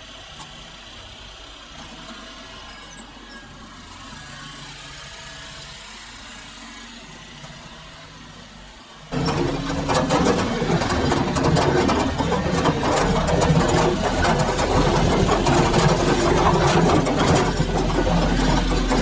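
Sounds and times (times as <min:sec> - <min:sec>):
diesel engine running: 0:00.0 - 0:19.0
machine clanks and knocks: 0:09.1 - 0:19.0.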